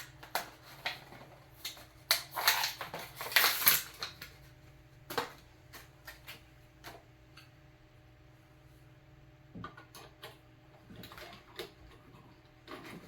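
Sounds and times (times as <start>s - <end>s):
rustling and crinkling: 0.0s - 7.0s.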